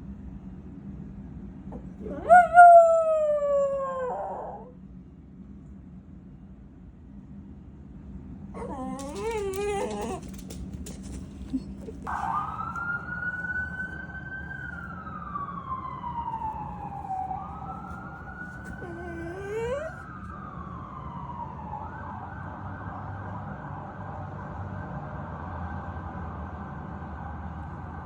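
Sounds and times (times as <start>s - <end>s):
dog howling: 1.8s - 4.7s, 8.6s - 14.2s, 16.4s - 20.2s
emergency siren wailing: 1.9s - 4.7s, 8.6s - 11.0s, 11.9s - 28.0s.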